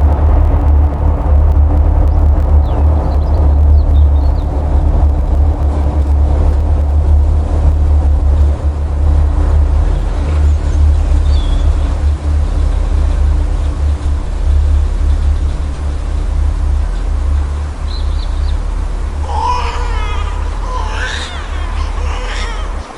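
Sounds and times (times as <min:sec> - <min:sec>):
loud low rumble: 0:00.0 - 0:22.9.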